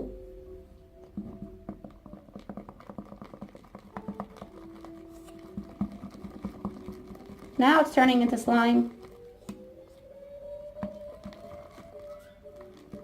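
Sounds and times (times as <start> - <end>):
stick stirring sticky slime: 1.2 - 13.0
wet clicks and squelches: 1.7 - 8.2.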